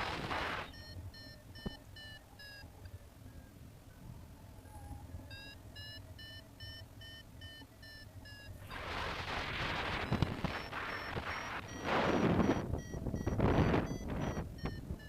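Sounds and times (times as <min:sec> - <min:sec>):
variometer beeping: 0:00.0 - 0:03.0, 0:04.8 - 0:15.0
wind rushing over microphone: 0:08.7 - 0:15.0.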